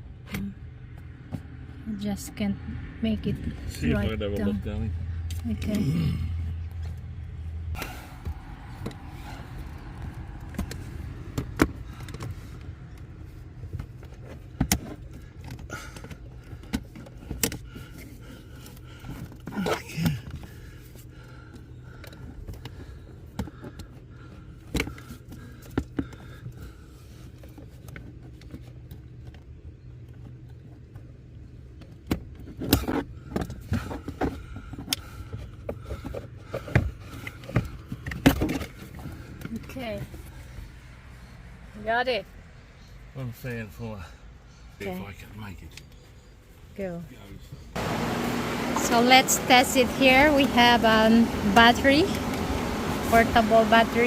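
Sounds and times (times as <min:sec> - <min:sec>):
low hum: 0:04.5 - 0:14.5, 0:47.7 - 0:54.0.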